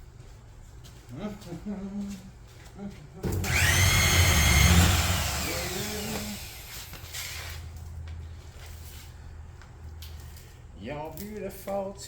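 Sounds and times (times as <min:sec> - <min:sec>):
motor rumble and rising whine: 0:03.3 - 0:07.7.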